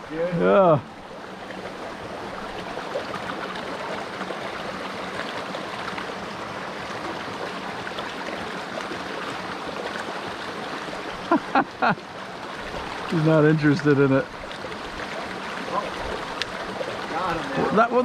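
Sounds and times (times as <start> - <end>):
stream flowing water: 0.0 - 18.0.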